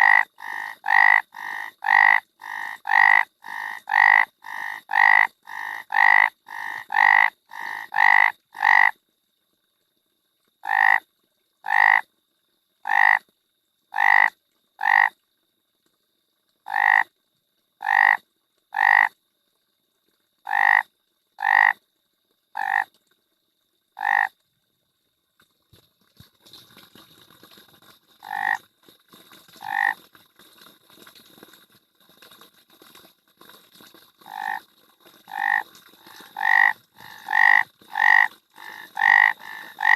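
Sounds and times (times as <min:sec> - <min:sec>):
frog croaking: 0:00.0 - 0:09.0, 0:10.6 - 0:11.0, 0:11.6 - 0:12.1, 0:12.8 - 0:13.2, 0:13.9 - 0:15.2, 0:16.6 - 0:17.1, 0:17.8 - 0:19.2, 0:20.4 - 0:21.8, 0:22.5 - 0:22.9, 0:24.0 - 0:24.4, 0:28.2 - 0:28.6, 0:29.6 - 0:30.0, 0:34.2 - 0:34.6, 0:35.3 - 0:39.9.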